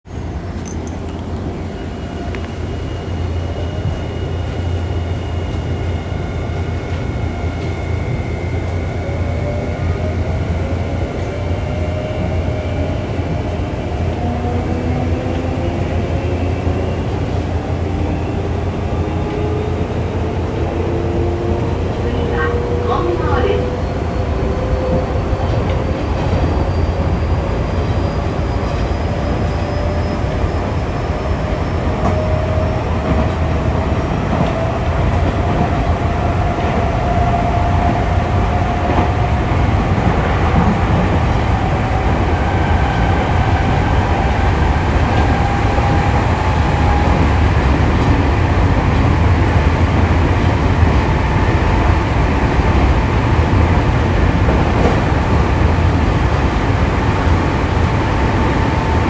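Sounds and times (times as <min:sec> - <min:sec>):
train wheels rumbling on rail: 0:00.2 - 0:59.0.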